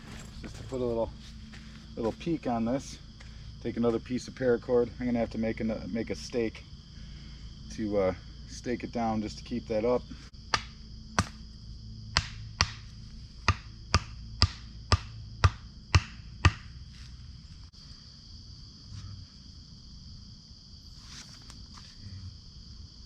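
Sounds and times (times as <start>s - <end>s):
crickets chirping: 0.0s - 23.0s
axe striking wooden stake: 10.5s - 11.4s, 12.1s - 16.8s.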